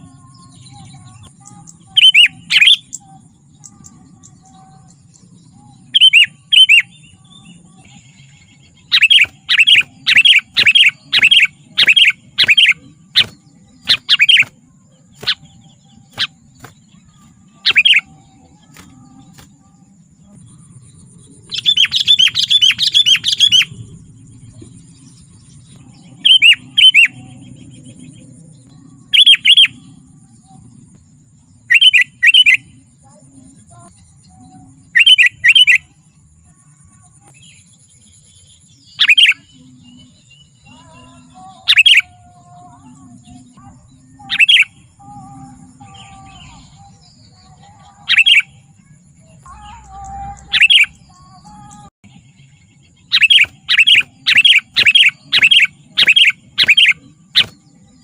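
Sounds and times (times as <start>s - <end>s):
bulbul sharp chirps: 9.0s - 14.5s, 17.7s - 18.0s, 53.2s - 57.6s.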